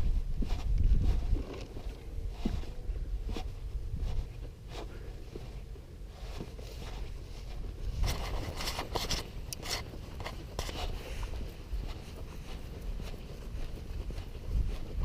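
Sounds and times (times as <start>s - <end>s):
footsteps crunching on trail: 0.0s - 15.0s
rustling: 0.0s - 15.0s.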